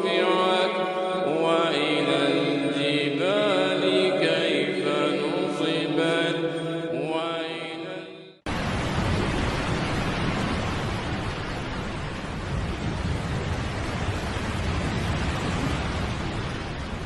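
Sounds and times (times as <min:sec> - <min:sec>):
steady rushing noise: 0:08.5 - 0:17.0.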